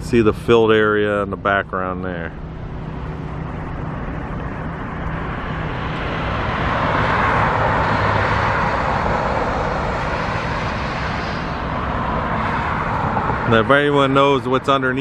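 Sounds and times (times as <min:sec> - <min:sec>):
motor vehicle passing: 0:00.0 - 0:15.0
steady low hum: 0:00.0 - 0:15.0.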